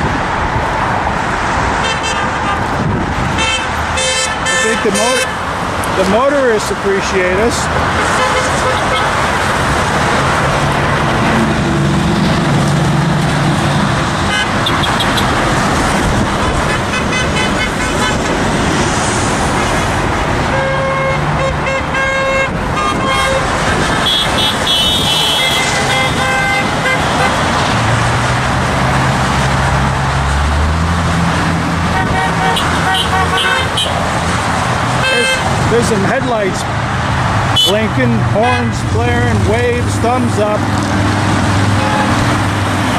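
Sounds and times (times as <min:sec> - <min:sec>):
road traffic passing: 0:00.0 - 0:42.9
car horns honking: 0:01.8 - 0:05.5, 0:07.9 - 0:09.4, 0:14.2 - 0:15.4, 0:16.5 - 0:18.5, 0:19.6 - 0:27.5, 0:31.9 - 0:34.1, 0:35.0 - 0:36.0, 0:37.4 - 0:40.4.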